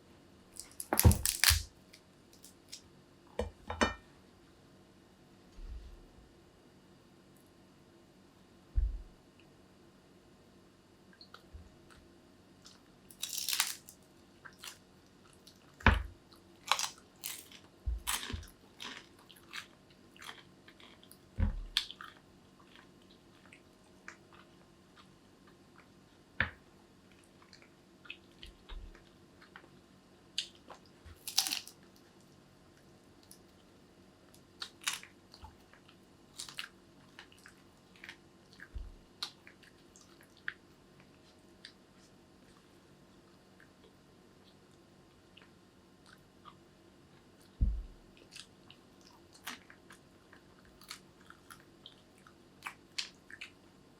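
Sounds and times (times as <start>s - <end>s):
crunchy bites: 0.6s - 1.7s, 13.1s - 14.8s, 15.9s - 22.2s, 31.1s - 31.8s
person chewing: 16.6s - 25.2s.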